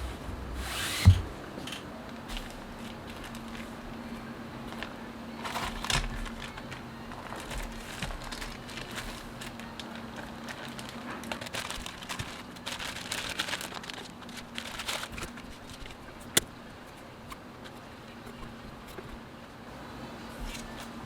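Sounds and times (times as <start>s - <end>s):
packaging crinkling and rustling: 2.3s - 3.8s, 4.6s - 19.3s, 20.4s - 21.0s.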